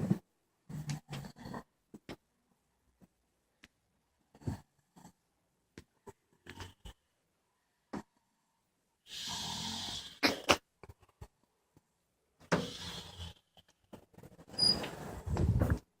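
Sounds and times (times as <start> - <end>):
person snoring: 9.1 - 10.2.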